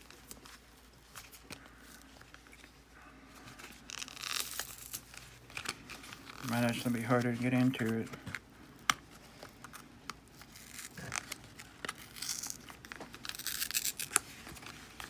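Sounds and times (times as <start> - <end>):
plastic packaging crinkling: 3.5 - 8.2, 9.1 - 15.0.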